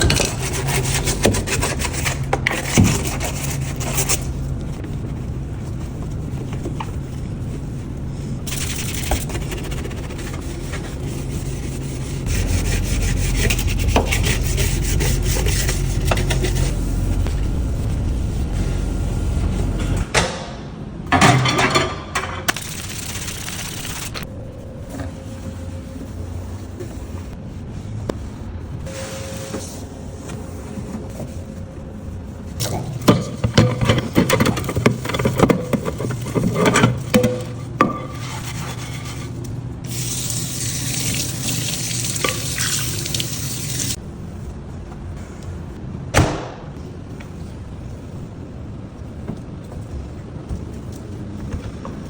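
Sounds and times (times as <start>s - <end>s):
scrubbing and wiping surfaces: 0.0s - 19.7s, 38.0s - 44.0s
low hum: 0.0s - 21.1s, 22.5s - 35.2s.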